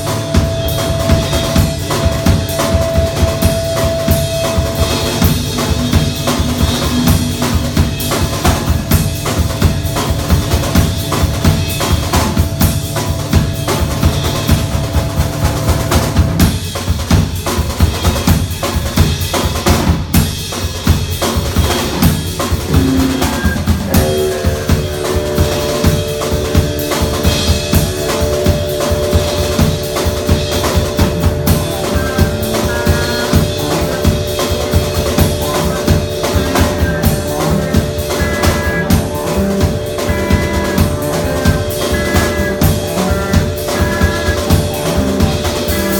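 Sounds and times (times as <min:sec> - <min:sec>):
fast dense drumming: 0:00.0 - 0:45.9.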